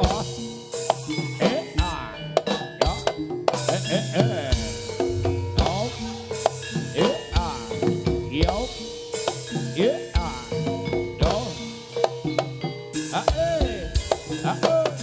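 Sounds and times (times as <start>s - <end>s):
ringing metal percussion: 0.0s - 15.0s
fast pitch-bending drumming: 2.8s - 8.9s.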